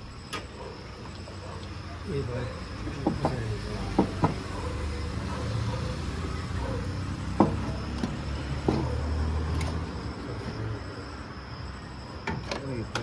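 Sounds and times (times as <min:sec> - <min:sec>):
hand tools knocking and clinking: 0:02.9 - 0:04.5.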